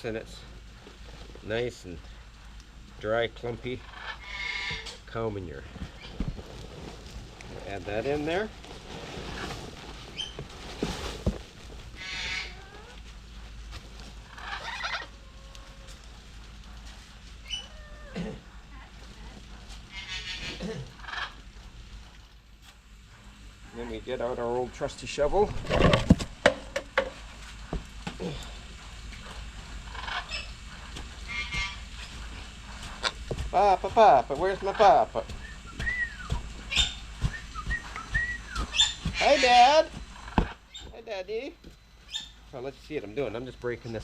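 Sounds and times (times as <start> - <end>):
wavering animal calls: 3.6 - 5.0, 11.9 - 13.1, 14.2 - 16.1, 17.4 - 21.6, 28.2 - 41.0
shovel scraping dry mix: 6.4 - 11.9.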